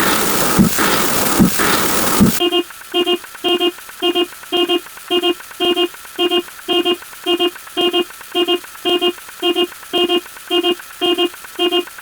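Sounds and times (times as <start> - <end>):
telephone double beep ringing: 2.4 - 11.9.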